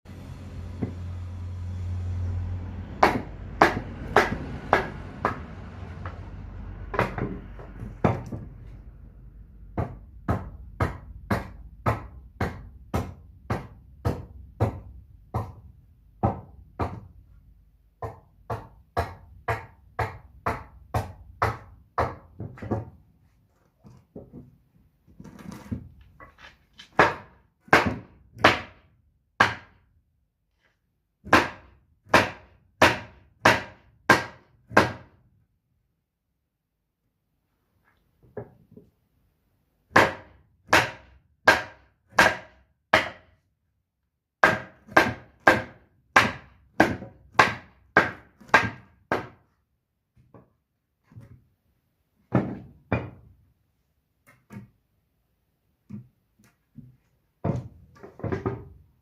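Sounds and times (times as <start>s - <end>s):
low hum: 0.1s - 9.6s
hammering on wood: 0.7s - 1.1s, 3.0s - 8.6s, 9.7s - 17.2s, 17.9s - 23.0s, 26.9s - 29.9s, 31.2s - 35.2s, 39.9s - 43.4s, 44.4s - 49.5s, 52.3s - 53.3s, 56.8s - 58.8s.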